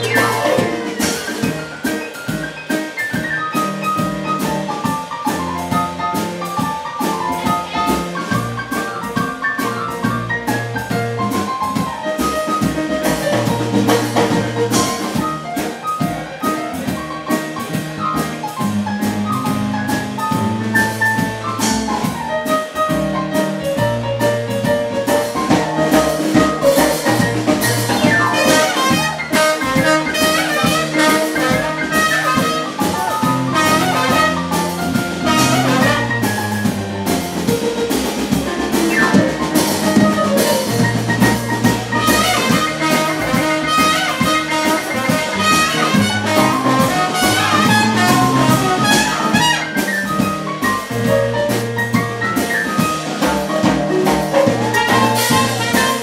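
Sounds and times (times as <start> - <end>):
trumpet: 0.0 - 1.6, 25.9 - 36.7, 41.7 - 50.7, 54.3 - 56.0
walking bass line: 0.0 - 1.7, 23.0 - 56.0
trombone: 0.0 - 2.0, 7.0 - 23.0, 23.7 - 56.0
drum kit: 0.0 - 56.0.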